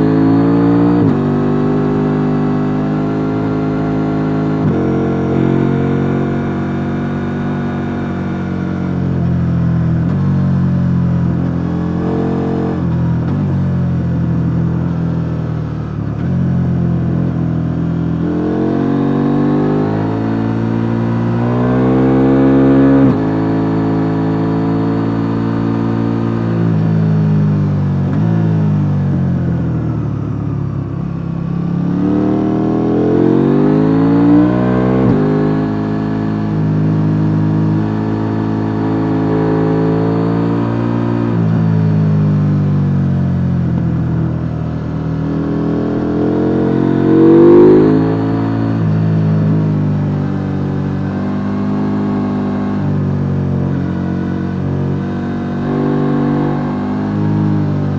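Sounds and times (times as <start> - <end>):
motorcycle engine revving: 16.1 - 27.1, 31.6 - 57.9.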